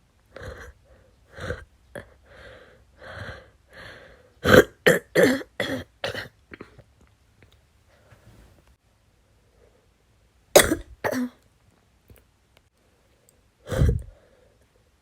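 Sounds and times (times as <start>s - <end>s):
chesty coughing: 4.4s - 6.8s, 10.6s - 11.4s.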